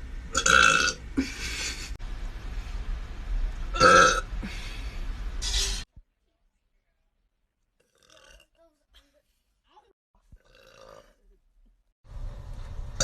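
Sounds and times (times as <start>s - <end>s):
woman burping loudly: 0.4s - 1.0s, 3.8s - 4.3s.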